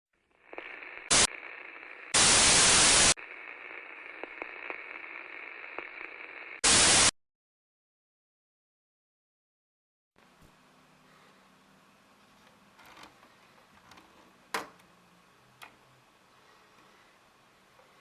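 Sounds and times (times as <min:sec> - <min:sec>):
loud white noise static bursts: 0:00.4 - 0:07.1.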